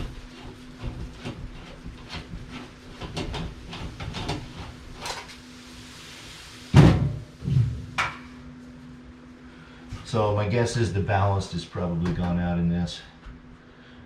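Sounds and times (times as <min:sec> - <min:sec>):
loud thump: 0:06.7 - 0:07.9.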